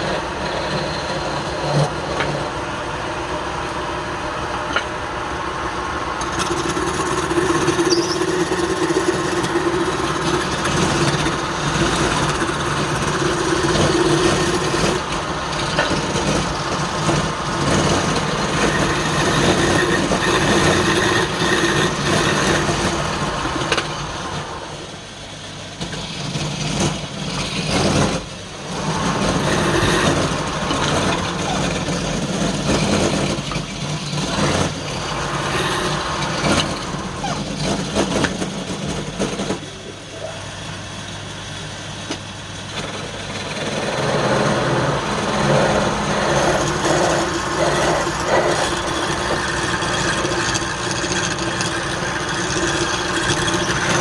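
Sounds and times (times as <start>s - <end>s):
wood lathe running: 0.0s - 54.0s
tool rubbing on turning wood: 6.2s - 24.4s, 26.3s - 39.8s, 43.2s - 54.0s.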